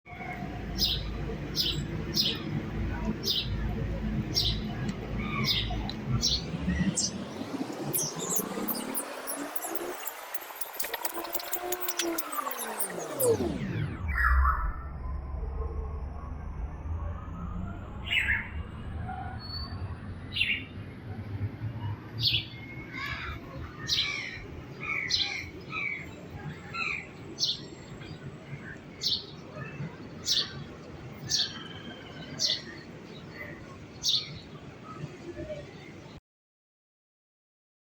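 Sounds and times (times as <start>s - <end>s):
small bird chirping: 0.2s - 14.8s.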